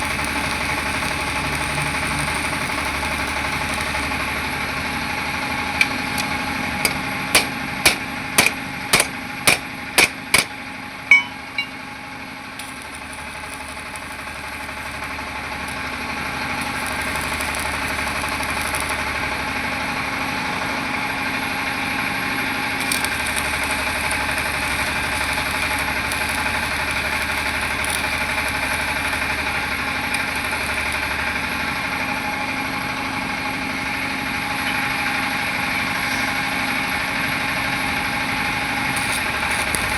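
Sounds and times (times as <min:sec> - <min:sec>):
steady mechanical hum: 0:04.0 - 0:11.8
sharp metal taps: 0:05.8 - 0:11.8.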